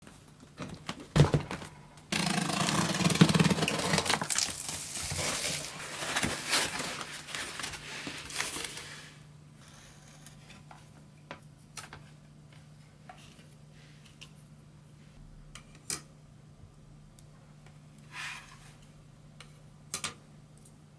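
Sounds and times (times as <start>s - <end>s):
rustling and scraping: 3.2s - 9.2s.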